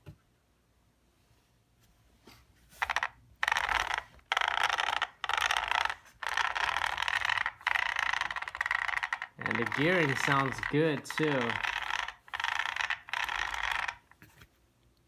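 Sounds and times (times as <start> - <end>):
toy truck gears whirring: 2.8 - 14.2.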